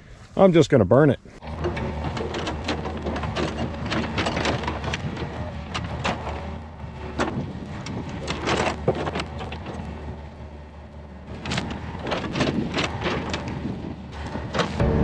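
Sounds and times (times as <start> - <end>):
diesel engine running: 1.4 - 15.0
sharp cracks and knocks: 1.6 - 10.0, 11.3 - 14.8.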